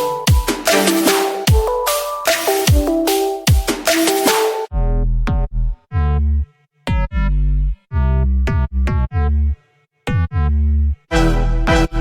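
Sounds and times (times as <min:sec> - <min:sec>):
electronic music with bass synth: 0:00.0 - 0:06.1.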